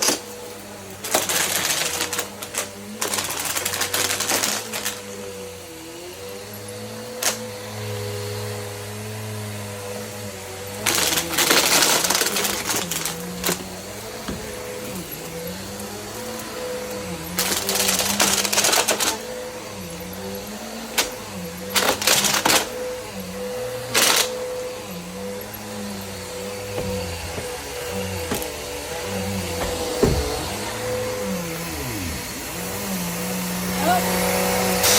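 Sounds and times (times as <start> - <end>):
vacuum cleaner motor hum: 0.0 - 34.9.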